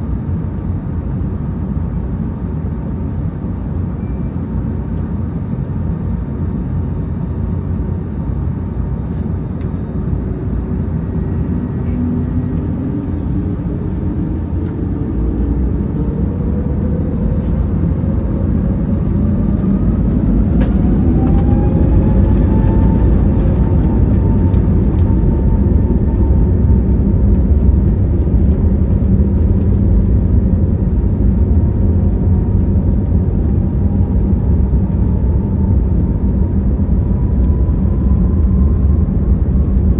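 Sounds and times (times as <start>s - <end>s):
steady rumble: 0.0s - 39.9s
jet engines whining: 4.9s - 39.9s.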